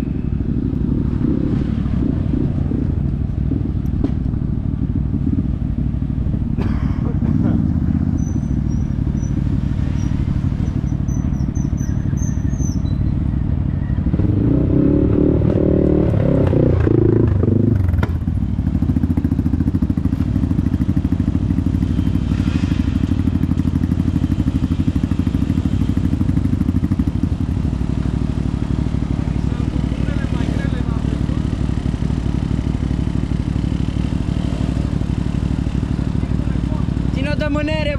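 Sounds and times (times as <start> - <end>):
atv engine running and revving: 0.0 - 37.9.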